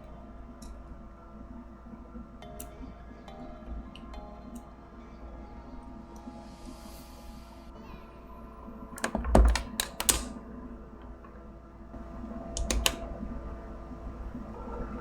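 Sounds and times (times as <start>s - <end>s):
laptop keyboard clicking: 9.0s - 10.4s, 12.5s - 13.1s.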